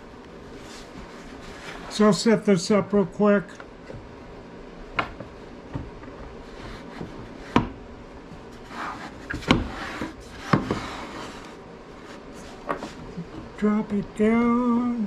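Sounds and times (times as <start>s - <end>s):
rubbing and scraping: 0.5s - 2.1s, 8.5s - 13.3s.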